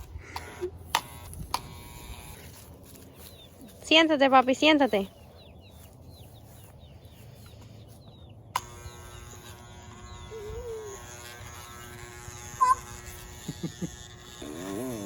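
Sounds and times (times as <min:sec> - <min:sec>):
hair clippers buzzing: 0:00.0 - 0:02.7, 0:08.5 - 0:15.0.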